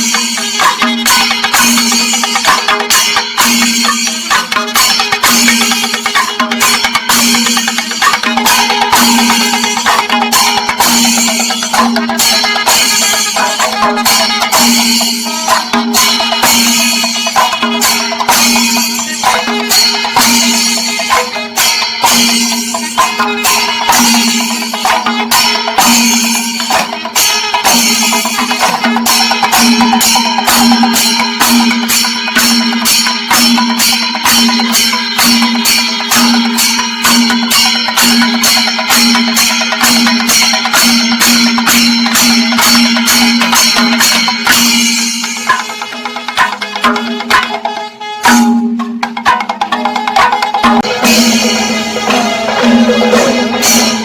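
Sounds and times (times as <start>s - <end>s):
drums playing: 0.0s - 54.0s
hand cymbals clashing: 0.0s - 54.0s
drums rolling fast: 48.4s - 54.0s.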